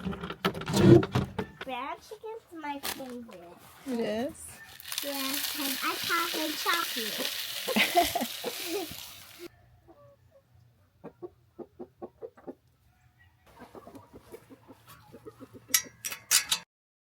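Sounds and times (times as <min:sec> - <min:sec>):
chickens clucking: 0:04.4 - 0:12.9, 0:13.5 - 0:16.0.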